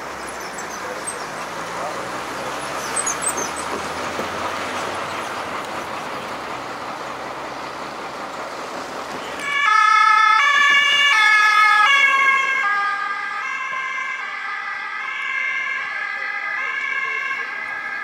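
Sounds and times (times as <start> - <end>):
road traffic rushing: 0.0 - 18.0
two-tone emergency siren: 9.3 - 18.0.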